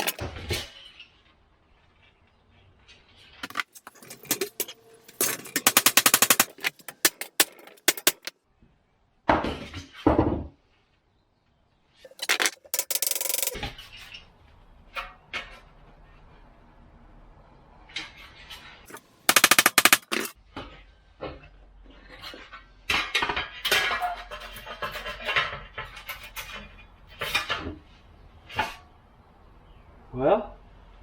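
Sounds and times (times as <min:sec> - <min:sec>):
metal clanks: 0:00.0 - 0:00.4, 0:03.4 - 0:08.3
power tool hammering steel: 0:05.2 - 0:08.3, 0:19.3 - 0:20.3.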